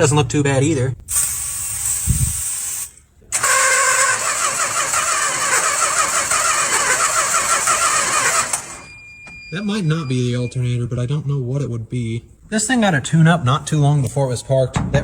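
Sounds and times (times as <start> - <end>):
engine cranking by starter: 3.3 - 9.0.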